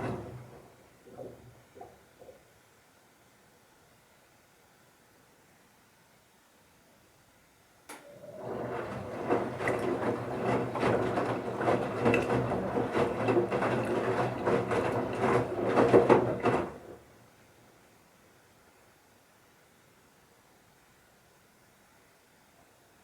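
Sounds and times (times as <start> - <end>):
washing machine drum tumbling: 0.0 - 1.9, 8.1 - 17.0
low motor hum: 8.2 - 17.0.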